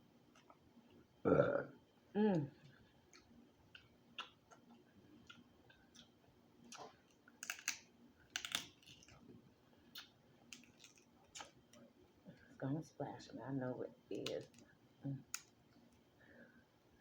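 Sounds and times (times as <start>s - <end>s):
wet eating clicks and smacks: 2.6s - 9.3s, 9.9s - 11.8s, 14.3s - 16.0s.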